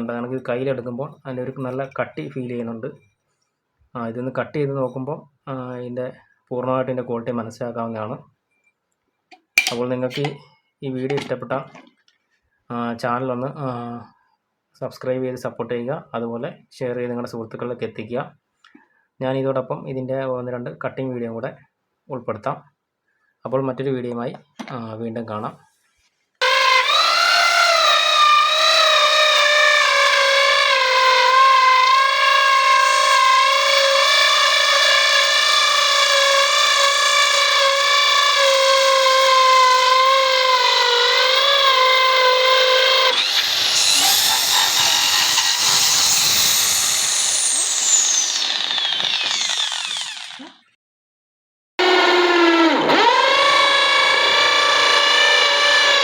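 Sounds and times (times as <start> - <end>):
electric drill motor whine: 26.4 - 50.6, 51.8 - 56.0
hole saw rasping while cutting: 26.4 - 50.6, 51.8 - 56.0.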